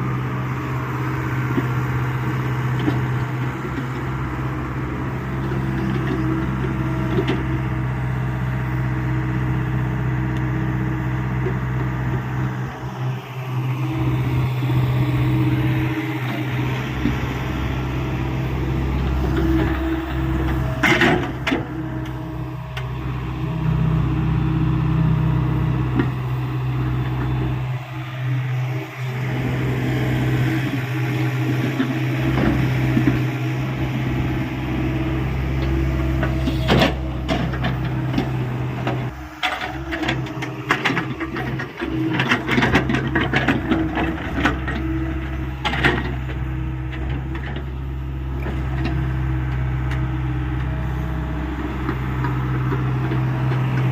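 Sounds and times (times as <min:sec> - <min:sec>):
excavator diesel engine running: 0:00.0 - 0:53.9
digging knocks and clatter: 0:19.0 - 0:22.2, 0:35.5 - 0:47.8.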